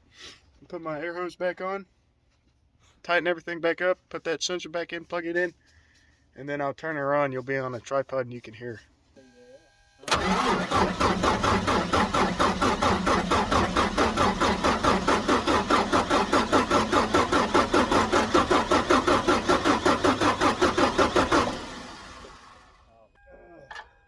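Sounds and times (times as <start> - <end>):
diesel engine cranking by starter: 10.1 - 22.8.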